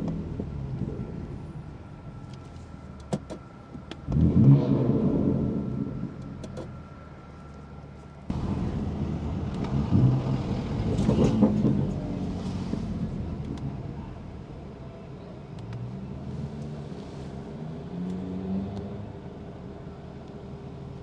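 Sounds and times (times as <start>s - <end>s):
car engine accelerating: 4.0s - 6.9s, 8.3s - 20.1s.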